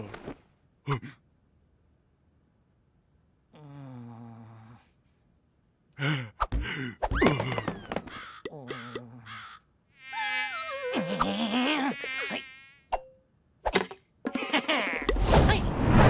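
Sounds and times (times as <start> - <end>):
cartoon insect buzz: 10.0 - 12.9.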